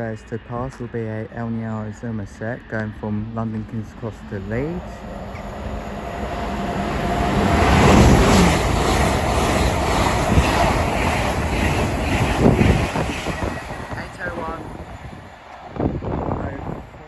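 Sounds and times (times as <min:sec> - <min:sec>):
express train passing at speed: 0:00.3 - 0:17.0.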